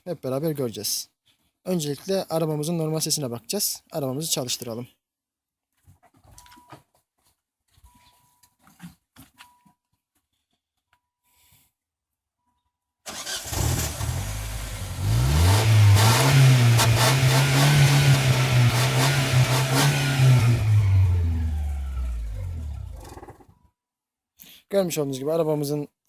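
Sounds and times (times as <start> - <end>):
car engine exhaust revving: 13.2 - 23.2.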